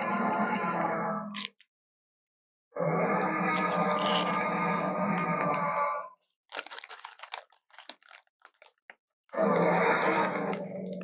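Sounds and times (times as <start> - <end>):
dinosaur roar sound effect: 0.0 - 1.4, 2.8 - 6.1, 9.3 - 11.0.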